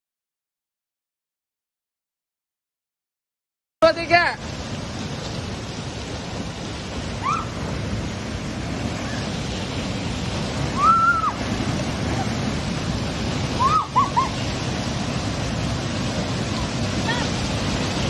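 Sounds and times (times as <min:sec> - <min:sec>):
waterfall rushing: 0:03.9 - 0:18.0.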